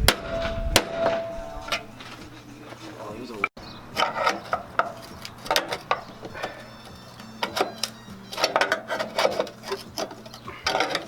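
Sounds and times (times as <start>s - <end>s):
hand tools on sheet metal: 3.9s - 11.0s.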